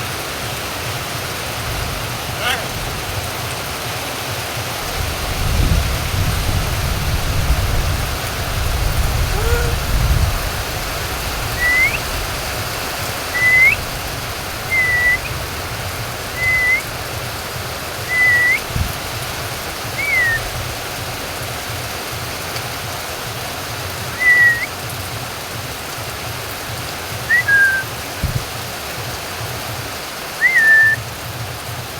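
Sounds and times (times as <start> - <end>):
rain falling: 0.0 - 31.9
bird whistling short notes: 11.6 - 12.0, 13.4 - 13.8, 14.7 - 15.3, 16.4 - 16.8, 18.1 - 18.6, 20.0 - 20.5, 24.2 - 24.7, 27.3 - 27.9, 30.4 - 31.0.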